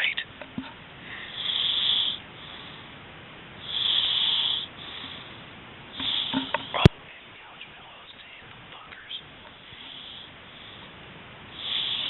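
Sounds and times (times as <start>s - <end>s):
man snoring: 1.2s - 2.6s, 3.6s - 5.2s, 6.0s - 6.8s, 11.6s - 12.0s.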